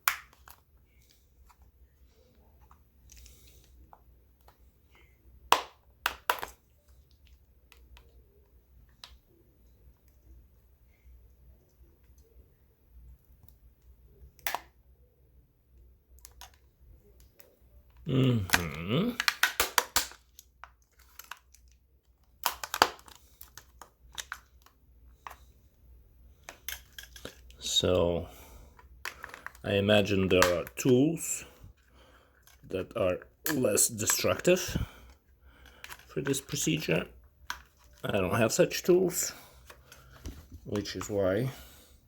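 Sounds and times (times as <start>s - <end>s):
small plastic clicks: 16.1s - 25.5s
plastic housing cracking: 18.5s - 21.6s, 22.4s - 24.7s.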